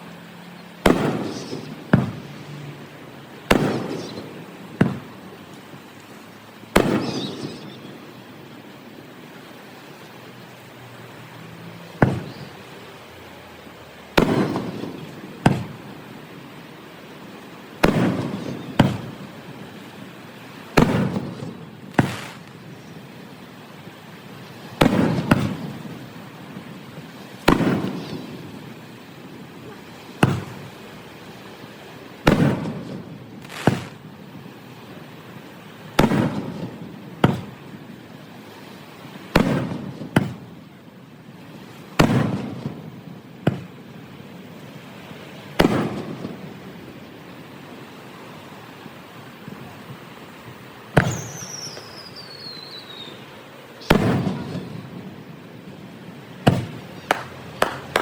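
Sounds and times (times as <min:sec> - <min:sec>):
fireworks shells bursting: 0:00.8 - 0:02.4, 0:03.4 - 0:07.9, 0:14.1 - 0:15.9, 0:17.7 - 0:20.1, 0:20.7 - 0:23.2, 0:24.6 - 0:26.0, 0:27.4 - 0:29.0, 0:29.6 - 0:30.7, 0:32.2 - 0:34.2, 0:35.9 - 0:37.7, 0:39.3 - 0:40.5, 0:42.0 - 0:43.8, 0:51.0 - 0:53.1, 0:53.8 - 0:54.8, 0:56.4 - 0:58.0.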